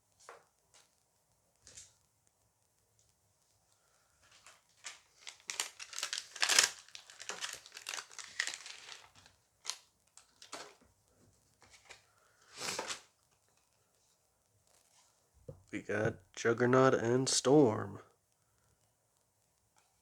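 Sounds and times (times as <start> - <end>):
plastic foil pack crinkling: 4.2 - 10.8, 11.6 - 13.2
foil tearing: 4.4 - 10.7, 11.8 - 13.1.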